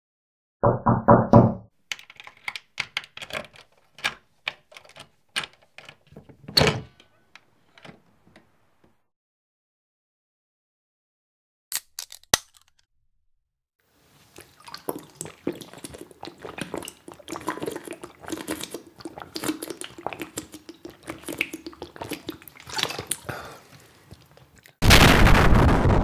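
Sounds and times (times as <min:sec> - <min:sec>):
wet clicking and dripping: 0:14.4 - 0:24.8
loud burst of noise: 0:24.8 - 0:26.0.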